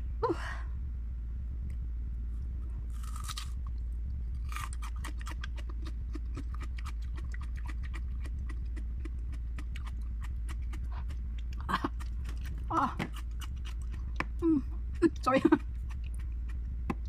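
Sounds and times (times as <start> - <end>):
low electrical hum: 0.0 - 17.0
chewing crunchy raw onion: 2.8 - 17.0.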